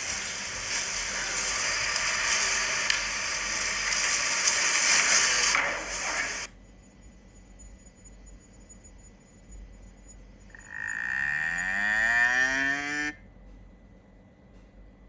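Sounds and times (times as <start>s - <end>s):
cow mooing: 10.6s - 13.2s.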